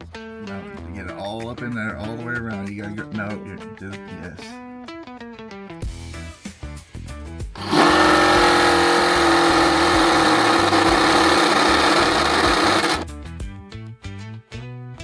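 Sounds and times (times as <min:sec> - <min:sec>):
electric power tool running: 0:07.6 - 0:13.1.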